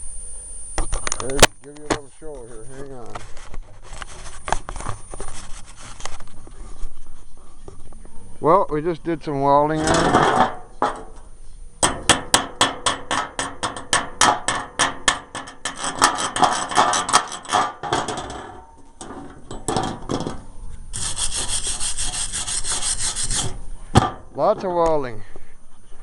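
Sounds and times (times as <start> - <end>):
steady hiss: 0.0 - 26.0
rhythmic scraping strokes: 2.1 - 7.2, 9.6 - 24.8.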